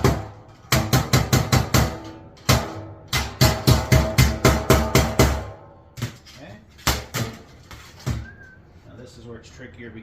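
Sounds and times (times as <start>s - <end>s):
hammer blows on sheet metal: 0.0s - 5.9s.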